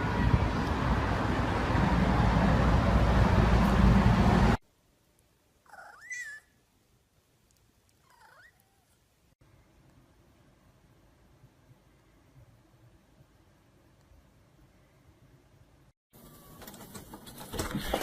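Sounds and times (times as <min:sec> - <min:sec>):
loud steady rushing noise: 0:00.0 - 0:04.6
cat meowing: 0:05.7 - 0:06.5, 0:08.0 - 0:09.0.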